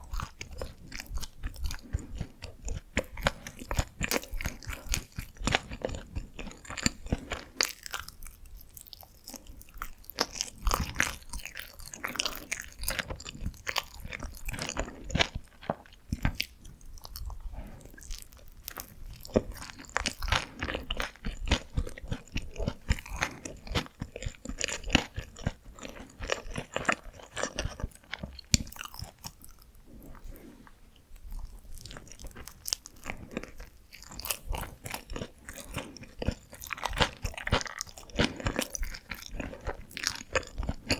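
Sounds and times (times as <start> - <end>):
close chewing with mouth clicks: 0.0 - 40.9.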